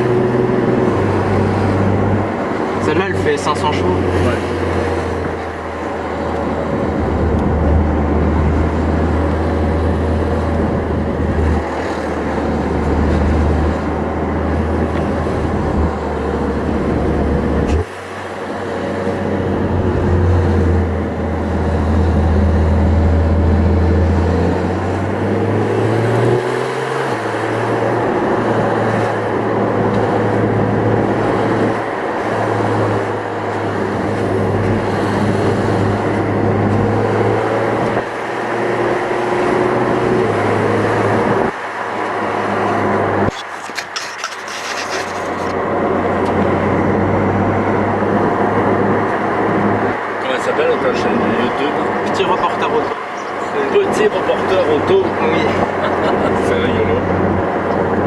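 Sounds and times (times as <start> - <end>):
car engine from inside cabin: 0.0 - 43.6
road noise: 0.0 - 58.0.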